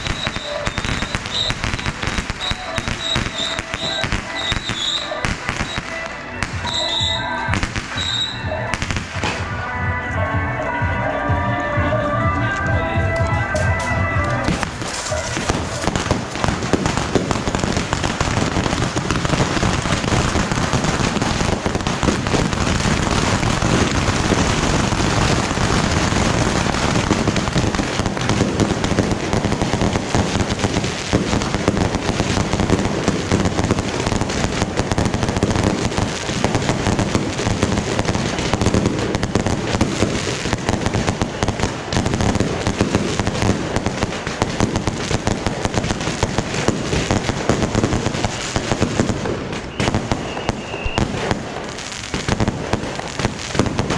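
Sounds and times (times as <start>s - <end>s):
fireworks cracking and popping: 0.0s - 9.6s, 13.2s - 53.9s.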